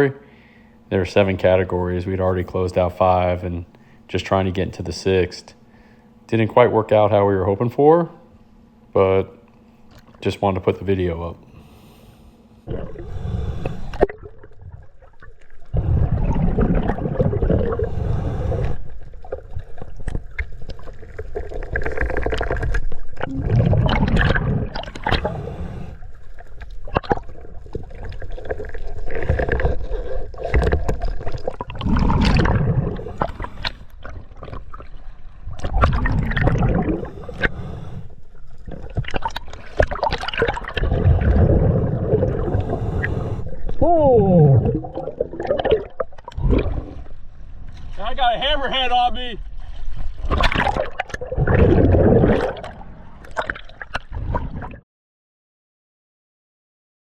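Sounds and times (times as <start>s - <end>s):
underwater bubbles gurgling: 12.6s - 48.0s, 49.5s - 54.8s.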